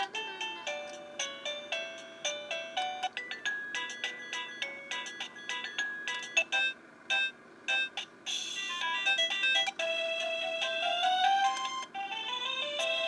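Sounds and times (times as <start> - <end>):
doorbell electronic chime melodies: 0.4 - 13.0.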